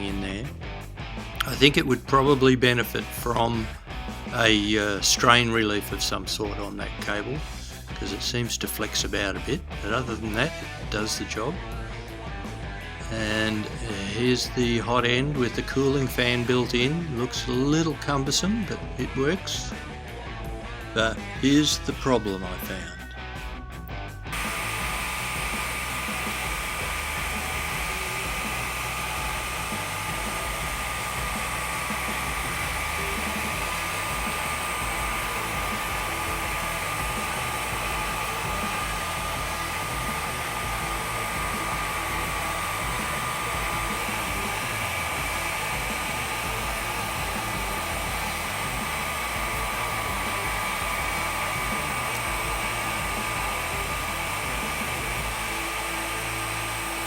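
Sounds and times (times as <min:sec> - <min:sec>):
cooling fans whirring: 0:24.3 - 0:57.0.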